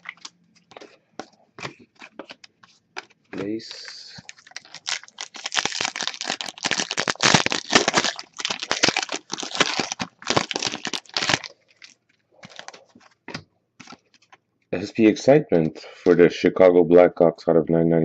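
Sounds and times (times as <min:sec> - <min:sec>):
foil wrapper crinkling and tearing: 0:03.7 - 0:13.1, 0:13.8 - 0:14.4.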